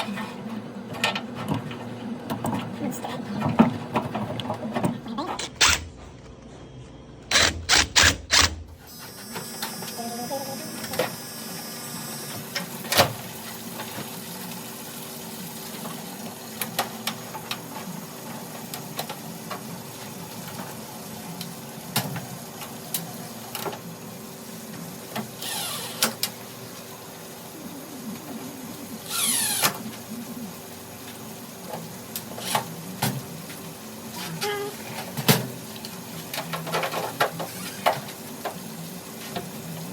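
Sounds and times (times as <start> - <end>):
faint steady hum: 22.8 - 35.0.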